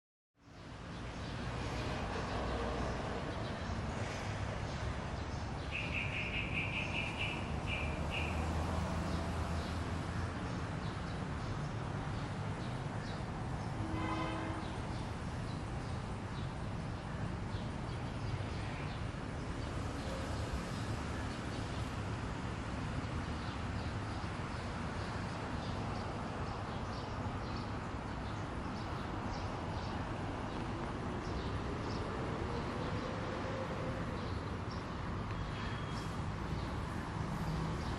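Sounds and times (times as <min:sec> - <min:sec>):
road traffic hum: 0:00.4 - 0:37.9
birds chirping: 0:05.6 - 0:08.5.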